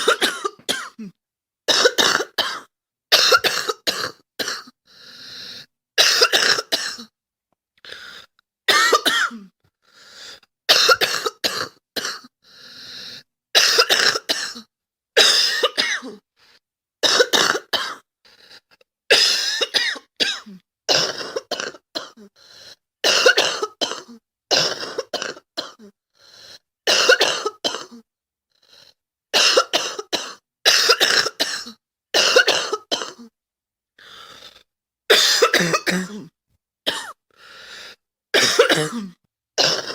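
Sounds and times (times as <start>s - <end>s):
girl coughing: 0.0s - 4.7s, 8.7s - 9.5s, 10.7s - 12.2s, 13.6s - 16.2s, 19.1s - 22.2s, 29.4s - 33.3s, 35.1s - 36.3s, 36.9s - 37.2s, 38.4s - 39.9s.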